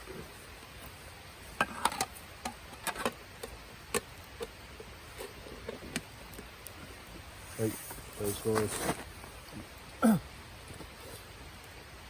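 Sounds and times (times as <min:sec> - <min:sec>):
sharp clicks and light knocks: 0:01.6 - 0:04.6.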